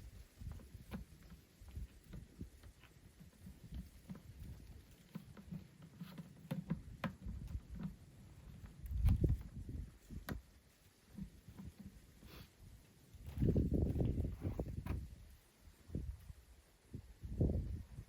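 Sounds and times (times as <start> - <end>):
light clicks and knocks: 0.3 - 12.3.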